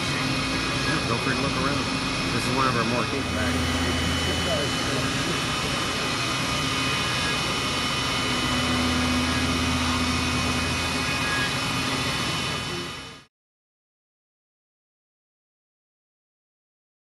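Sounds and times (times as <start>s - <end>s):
low machine hum: 0.0s - 13.3s
machine tools whining: 0.0s - 13.3s.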